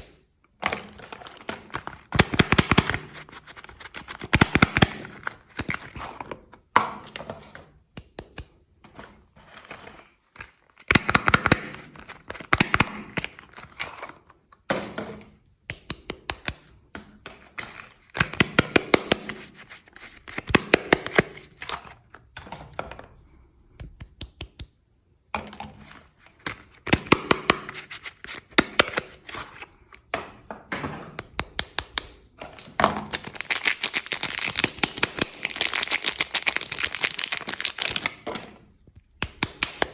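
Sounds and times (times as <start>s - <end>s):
packaging crinkling and tearing: 0.8s - 6.0s, 33.1s - 38.3s.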